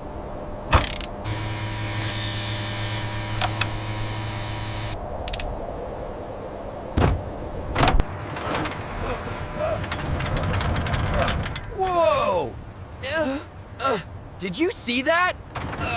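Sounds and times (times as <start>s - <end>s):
steady hum with hiss: 0.0s - 6.9s
sharp clicks: 0.7s - 1.2s, 3.4s - 3.8s, 5.2s - 5.5s.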